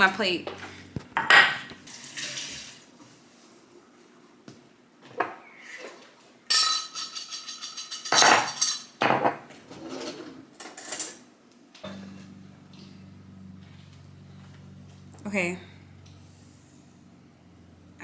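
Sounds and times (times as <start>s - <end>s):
low steady hum: 0.0s - 2.9s, 11.7s - 18.0s
utensils clinking on plates: 0.5s - 2.9s, 6.5s - 12.9s.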